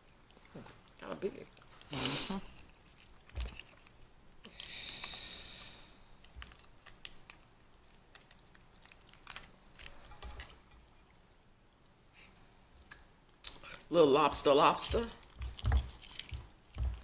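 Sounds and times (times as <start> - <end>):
shells cracking and clicking: 2.5 - 10.6, 15.2 - 16.9.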